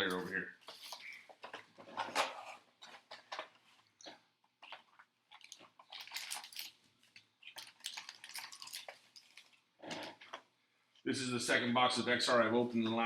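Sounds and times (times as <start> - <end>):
wrappers crinkling and tearing: 5.3 - 10.3.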